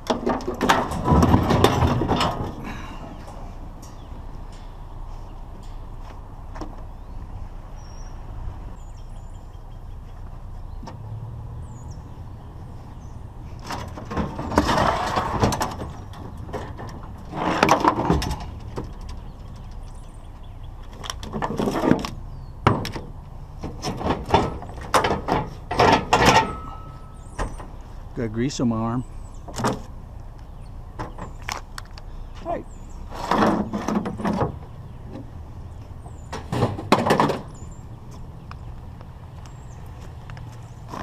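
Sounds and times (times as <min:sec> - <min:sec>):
sharp metallic clicks and knocks: 0:00.0 - 0:06.9
scrap metal scraping and rattling: 0:00.0 - 0:07.0, 0:13.0 - 0:20.1, 0:20.9 - 0:28.1, 0:32.9 - 0:37.8.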